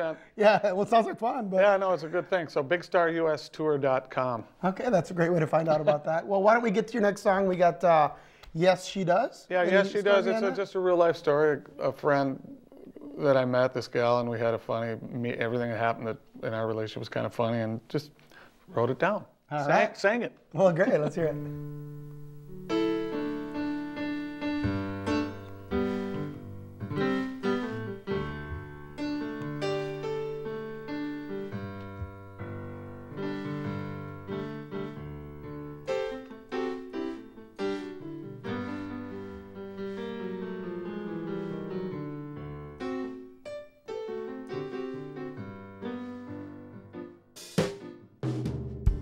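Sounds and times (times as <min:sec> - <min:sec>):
piano chords and melody: 0:21.1 - 0:48.4.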